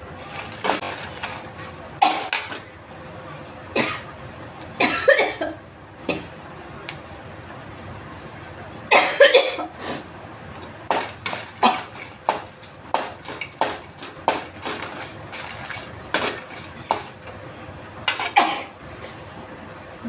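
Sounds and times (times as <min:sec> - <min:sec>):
metal utensil scraping a pan: 0:14.3 - 0:17.2, 0:18.1 - 0:18.4.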